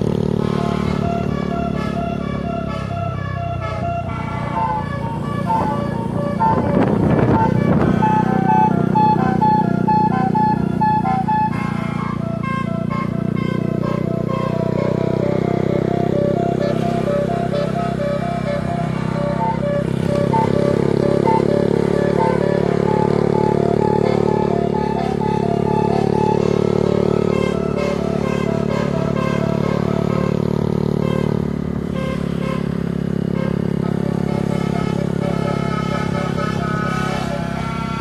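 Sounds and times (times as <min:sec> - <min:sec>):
bus engine drone: 0:00.0 - 0:38.0
bus horn melody: 0:00.0 - 0:38.0.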